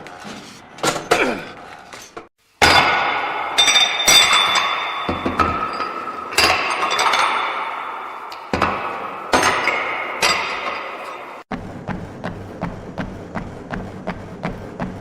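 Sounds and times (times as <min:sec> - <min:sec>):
metal gym equipment clanking: 0:02.6 - 0:11.4.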